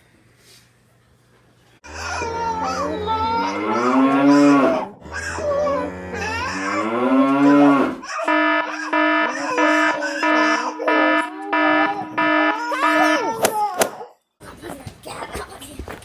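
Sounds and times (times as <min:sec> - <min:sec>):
cow mooing: 0:01.8 - 0:13.4
electronic alarm buzzing: 0:05.3 - 0:13.5.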